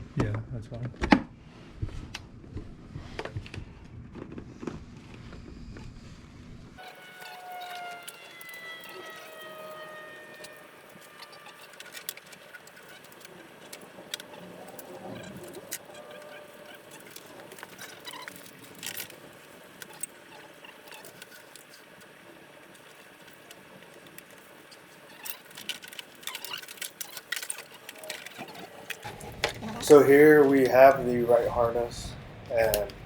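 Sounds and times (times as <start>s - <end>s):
hands handling parts clicking: 10.3s - 30.8s.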